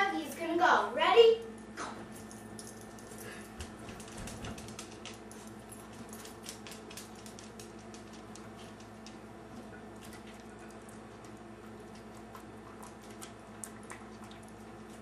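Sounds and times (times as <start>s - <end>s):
dog licking and chewing: 2.8s - 15.0s.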